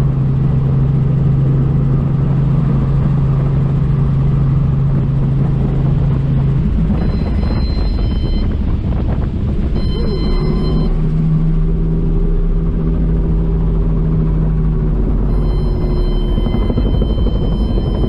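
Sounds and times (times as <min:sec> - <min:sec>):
heavy rumble: 0:00.0 - 0:18.0
helicopter drone: 0:00.0 - 0:18.0
high steady tones: 0:07.0 - 0:08.5, 0:09.8 - 0:11.0, 0:15.2 - 0:18.0.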